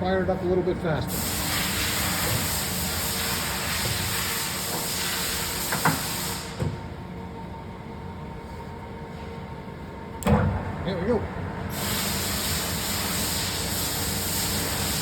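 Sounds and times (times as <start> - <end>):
strong hiss: 1.1 - 6.6, 11.7 - 15.0.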